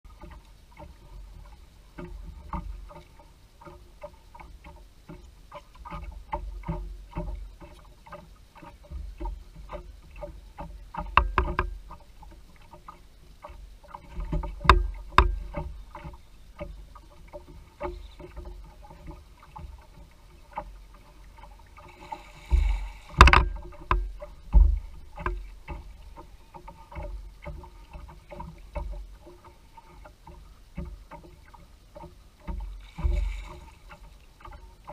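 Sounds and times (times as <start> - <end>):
knocks against boat hull: 10.7 - 12.0, 14.2 - 16.2, 22.4 - 26.1.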